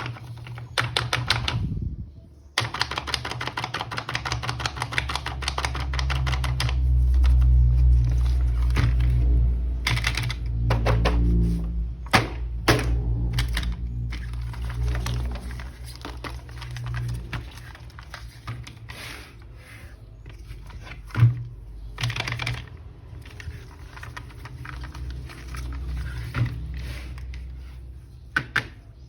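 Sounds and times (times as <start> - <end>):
plastic packaging crinkling: 14.0 - 18.9.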